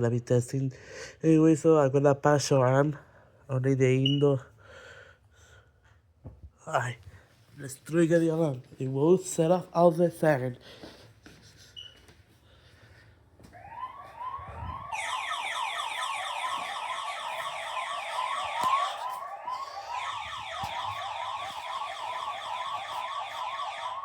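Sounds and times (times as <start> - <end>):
electronic alarm siren whoops: 13.5 - 24.0.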